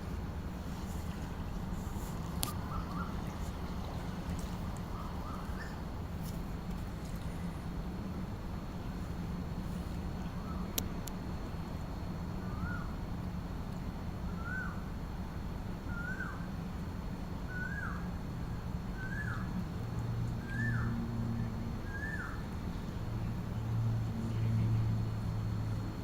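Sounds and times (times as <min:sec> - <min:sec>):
steady low rumble: 0:00.0 - 0:14.3
bird calling: 0:01.8 - 0:06.4, 0:19.0 - 0:19.5, 0:21.8 - 0:22.5.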